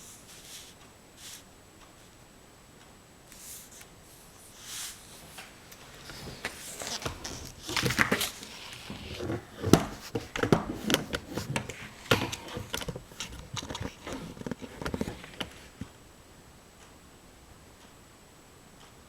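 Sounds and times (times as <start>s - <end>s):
oil pastel scratching on paper: 0.0s - 1.4s, 3.3s - 5.4s.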